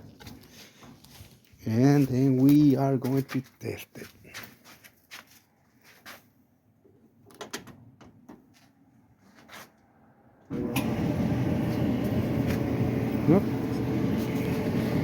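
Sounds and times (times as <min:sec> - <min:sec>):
electric dryer running: 0:10.5 - 0:15.0.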